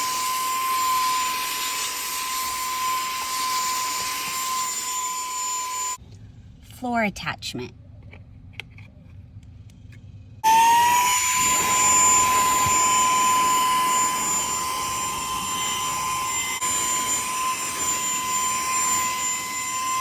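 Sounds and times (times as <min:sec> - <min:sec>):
handheld vacuum motor whining: 0:00.0 - 0:06.0, 0:10.4 - 0:20.0.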